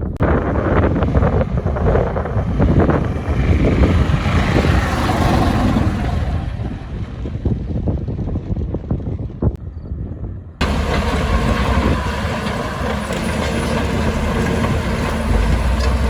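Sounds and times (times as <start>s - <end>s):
diesel engine rumbling: 0.0s - 16.0s.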